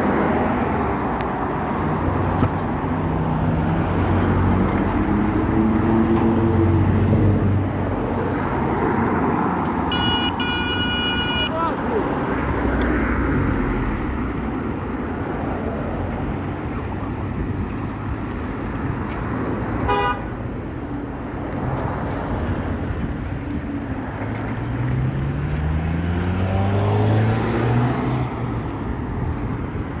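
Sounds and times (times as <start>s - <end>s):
road traffic: 0.0s - 30.0s
car horn toot: 9.9s - 11.6s, 19.8s - 20.3s.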